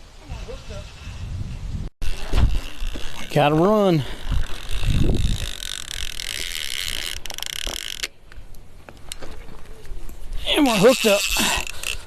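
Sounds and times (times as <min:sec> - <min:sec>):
fishing reel clicker buzzing: 0:02.0 - 0:03.4, 0:04.1 - 0:08.2, 0:10.6 - 0:12.0.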